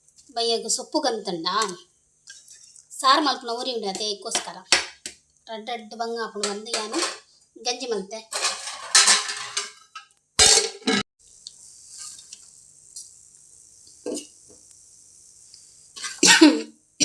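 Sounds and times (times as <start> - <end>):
kitchen utensils clattering: 6.4 - 7.3, 8.3 - 11.1.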